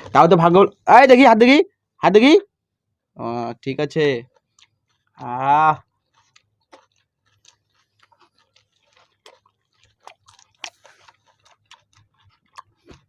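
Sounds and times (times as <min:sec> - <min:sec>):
close-up chewing: 0:04.2 - 0:13.0.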